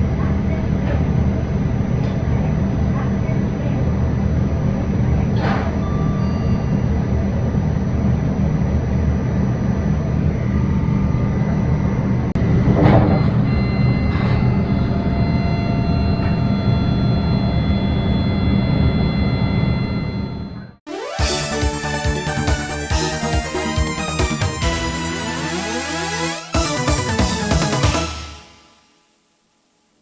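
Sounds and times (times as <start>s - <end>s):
train cab running rumble: 0.0s - 20.8s
signal chime tones: 5.8s - 7.2s, 12.9s - 22.0s.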